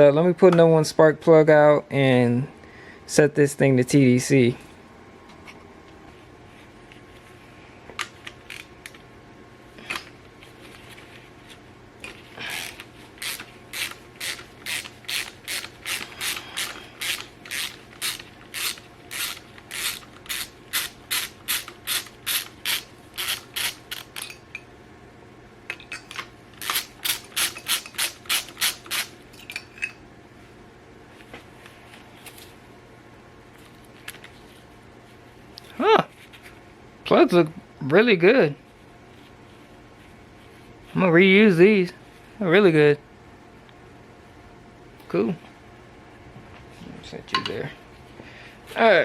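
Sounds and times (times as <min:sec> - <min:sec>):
ratchet wrench clicking: 0:12.5 - 0:24.3, 0:26.6 - 0:29.1.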